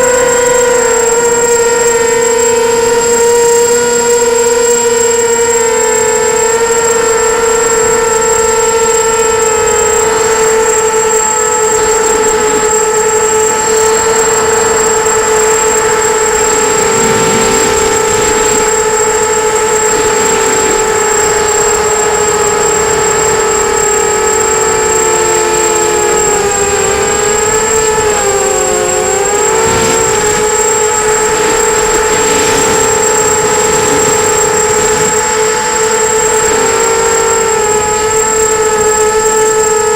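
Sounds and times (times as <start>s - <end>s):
quadcopter motors whining: 0.0s - 39.9s
thin constant high tone: 0.0s - 39.9s.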